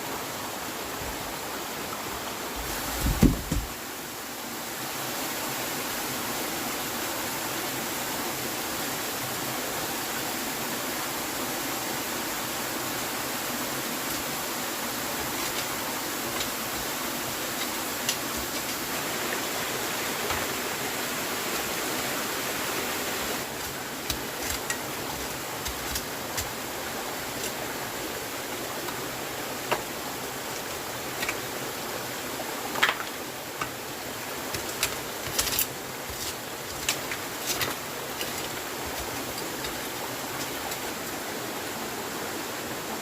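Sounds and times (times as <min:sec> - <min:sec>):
water rushing: 0:00.0 - 0:43.0
sharp ticks and snaps: 0:17.5 - 0:18.9.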